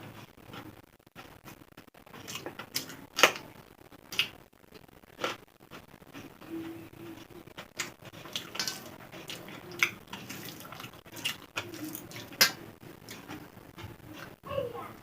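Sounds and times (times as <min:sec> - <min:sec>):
person chewing food: 0:00.0 - 0:14.4.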